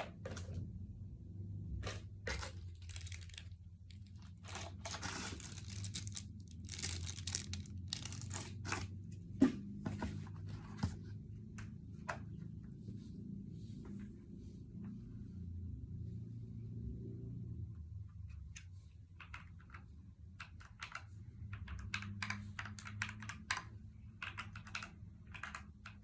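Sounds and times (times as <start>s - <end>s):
packaging crinkling and tearing: 2.3s - 8.9s.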